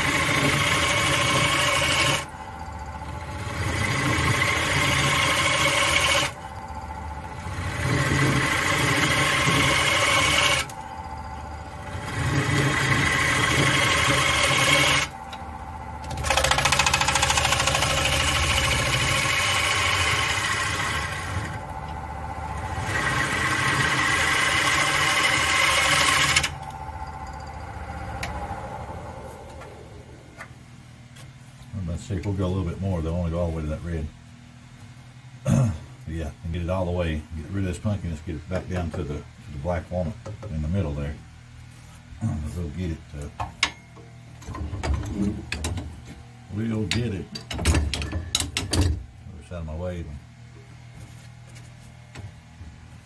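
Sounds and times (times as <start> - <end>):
tool cutting wood on lathe: 0.0 - 29.8
lathe running: 0.0 - 30.5.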